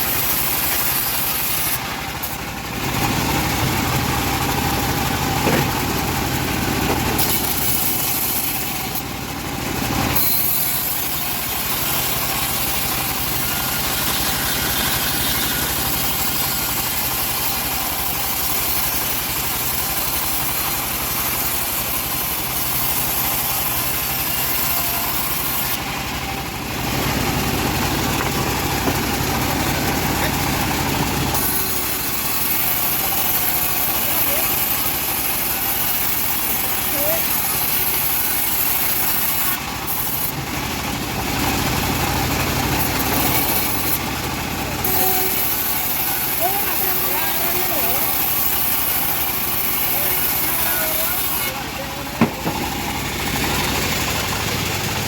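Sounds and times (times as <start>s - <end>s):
sawmill engine running: 0.0s - 55.0s
sharp knock: 52.2s - 52.6s.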